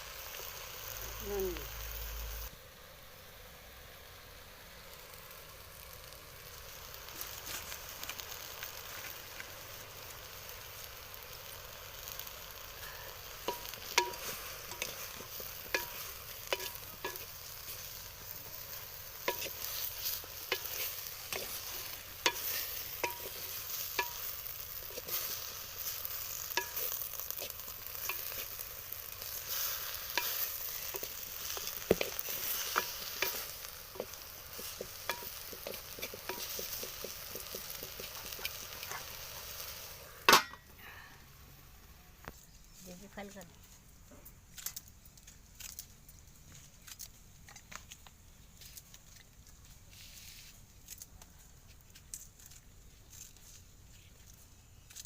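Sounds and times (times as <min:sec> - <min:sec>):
vegetables sizzling in a pan: 0:00.0 - 0:55.0.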